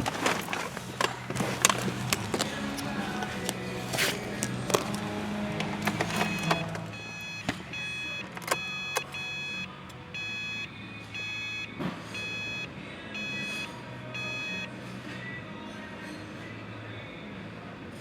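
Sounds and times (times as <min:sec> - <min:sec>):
car warning chime: 0:05.6 - 0:14.7.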